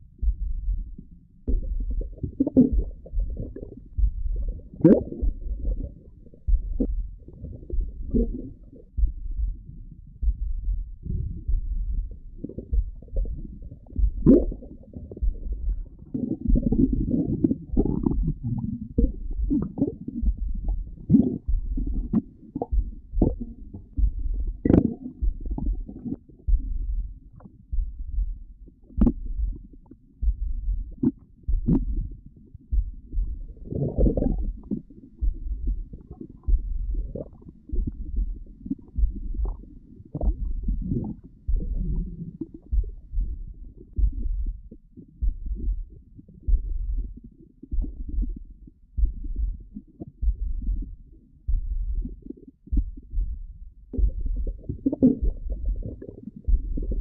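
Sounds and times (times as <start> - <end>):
stomach growling: 1.5 - 9.0, 11.0 - 27.5, 33.0 - 57.0
short sharp stomach pops: 14.2 - 14.7.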